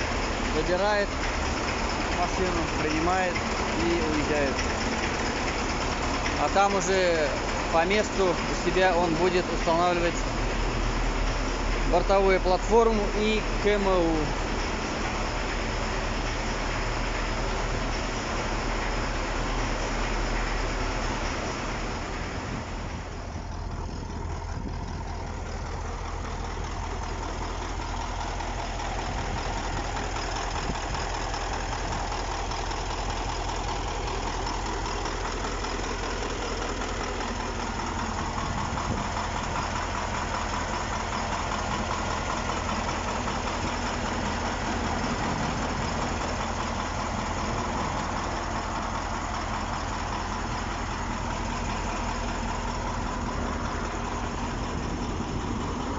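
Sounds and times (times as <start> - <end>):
truck diesel engine idling: 0.0 - 55.9.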